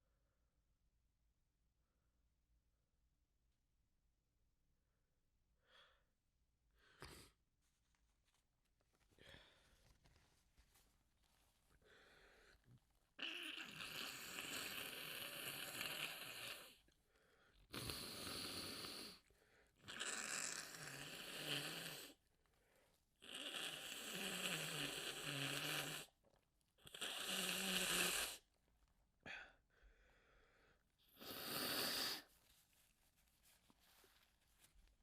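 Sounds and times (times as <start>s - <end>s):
person blowing their nose: 31.1s - 32.4s.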